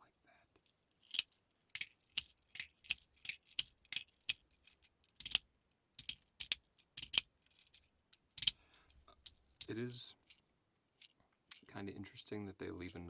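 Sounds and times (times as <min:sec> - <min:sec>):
plastic fidget slider clicking: 0:06.0 - 0:07.3.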